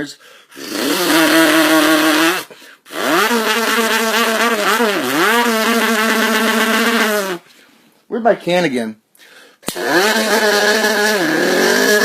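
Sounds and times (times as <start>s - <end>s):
man imitating car engine: 0.5s - 7.4s, 9.7s - 12.0s.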